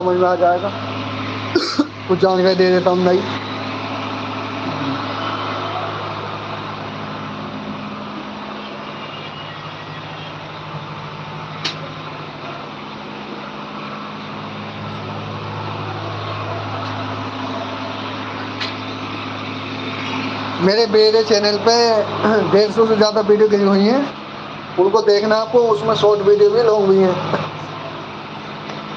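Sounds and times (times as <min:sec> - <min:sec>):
vehicle engine humming: 0:00.0 - 0:28.9
sharp clicks: 0:11.6 - 0:11.9.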